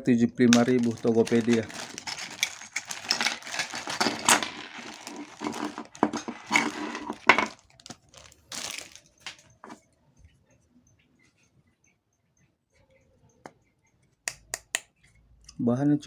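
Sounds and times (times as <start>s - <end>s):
packaging crinkling: 0.4s - 9.8s.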